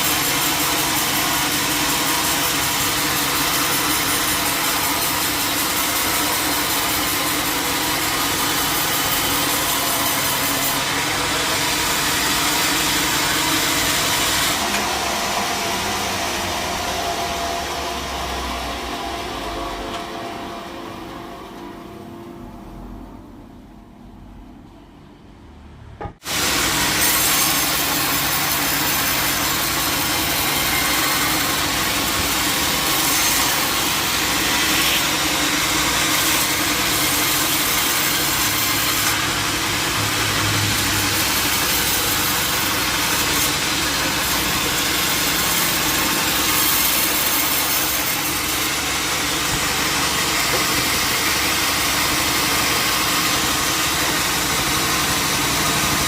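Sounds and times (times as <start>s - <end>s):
band saw cutting log: 0.0s - 21.0s, 26.2s - 56.0s
machine hum: 0.0s - 26.9s.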